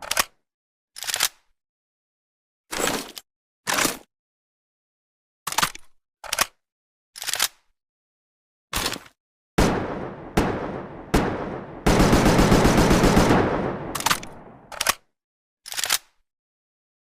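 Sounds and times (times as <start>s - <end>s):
automatic gunfire burst: 9.6s - 14.8s
rifle single shots: 9.6s - 14.8s.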